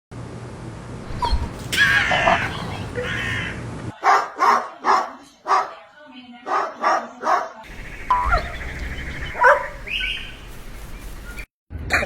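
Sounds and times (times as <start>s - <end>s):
dog barking: 3.9s - 5.8s, 6.4s - 8.6s, 9.2s - 10.2s
noisy background: 7.7s - 11.4s.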